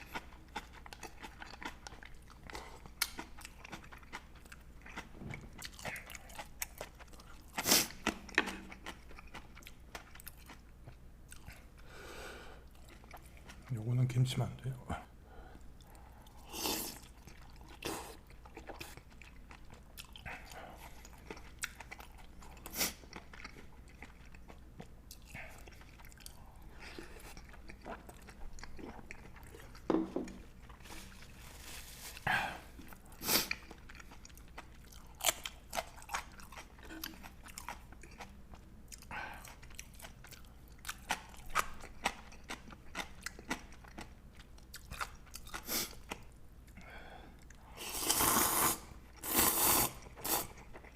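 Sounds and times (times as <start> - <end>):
chewing and biting: 0.0 - 11.8, 17.0 - 31.3, 32.8 - 46.8.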